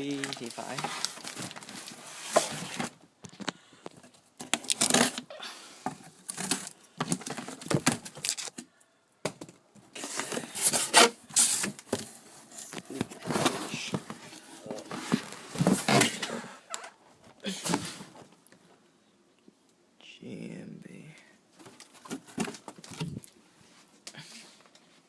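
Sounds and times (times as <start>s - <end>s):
packaging tearing and crinkling: 4.5s - 5.2s, 6.2s - 8.6s.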